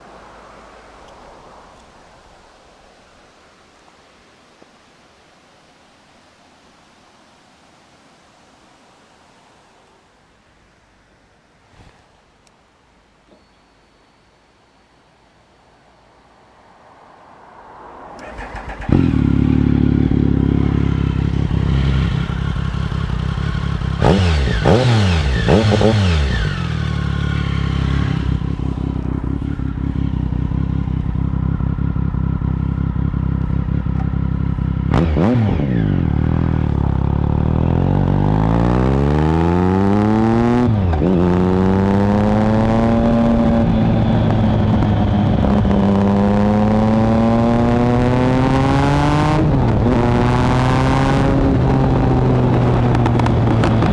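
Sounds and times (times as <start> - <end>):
motorcycle engine starting and revving: 18.0 - 53.9.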